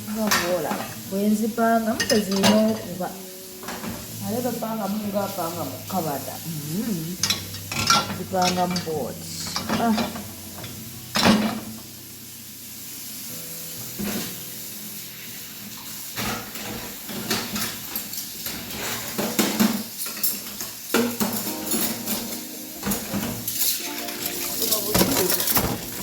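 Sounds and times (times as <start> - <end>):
dishes clinking and clattering: 1.9 - 3.0, 3.6 - 4.1, 7.2 - 11.8, 16.2 - 26.0.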